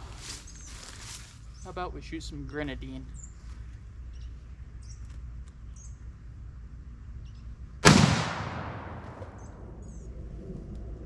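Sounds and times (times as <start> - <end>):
rifle shot: 7.8 - 10.0.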